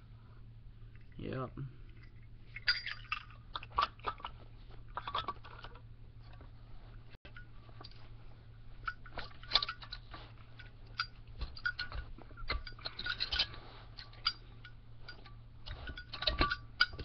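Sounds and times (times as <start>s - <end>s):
metallic clicks and clinks: 8.8s - 17.0s.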